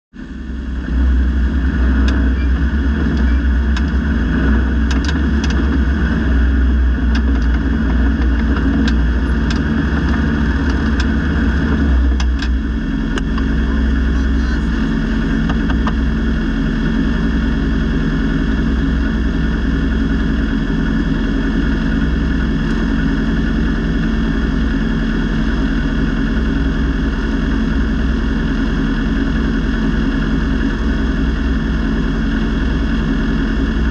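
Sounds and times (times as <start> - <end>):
engine running with deep drone: 0.1 - 33.9
sharp ticks and knocks: 3.1 - 4.1, 4.8 - 5.9, 7.1 - 11.4, 12.1 - 13.5, 15.4 - 16.0.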